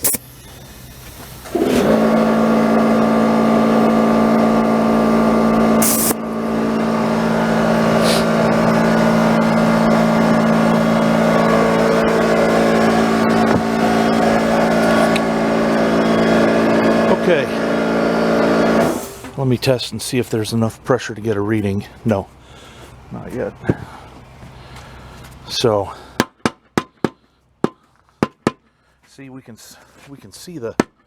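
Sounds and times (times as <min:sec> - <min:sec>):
air compressor running: 0:00.0 - 0:19.5.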